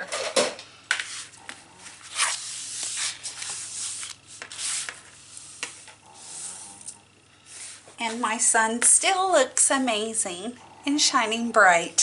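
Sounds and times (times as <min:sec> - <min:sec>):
paper rustling and sliding: 0:02.0 - 0:05.9.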